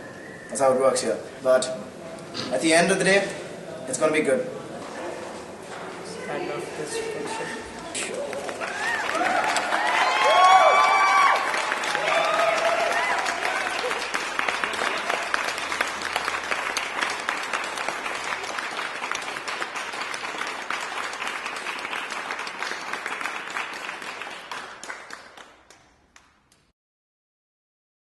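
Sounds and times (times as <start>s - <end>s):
crowd applauding: 8.2s - 26.6s.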